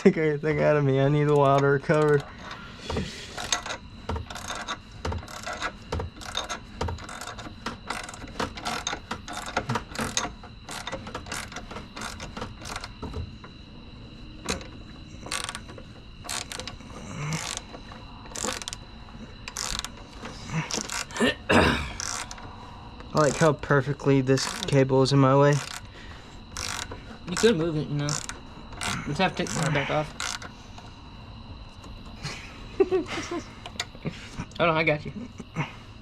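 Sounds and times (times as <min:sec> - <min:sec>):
socket ratchet clicking: 0:01.1 - 0:13.2, 0:14.5 - 0:21.2, 0:22.0 - 0:22.5, 0:24.4 - 0:24.9, 0:25.5 - 0:30.9.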